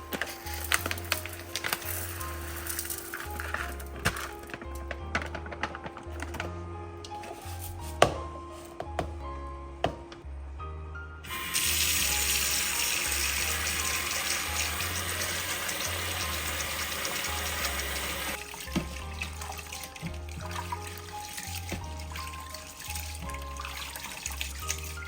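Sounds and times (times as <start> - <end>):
background music: 0.0 - 25.0
tap running into a sink: 11.3 - 25.0
water trickling: 11.3 - 25.0.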